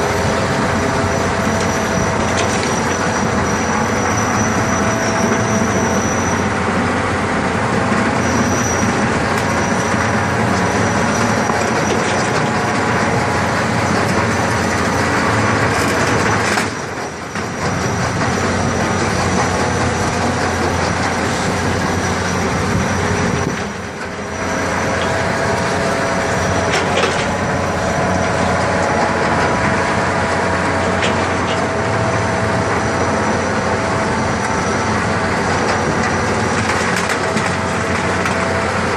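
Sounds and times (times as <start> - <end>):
digging machine din: 0.0 - 38.9.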